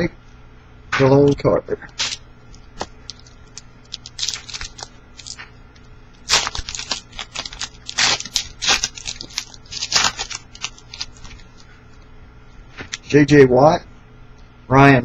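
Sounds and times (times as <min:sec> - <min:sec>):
cards being handled: 0:01.9 - 0:05.5, 0:06.2 - 0:11.7
wrapper tearing and crinkling: 0:01.9 - 0:05.5, 0:06.2 - 0:11.6.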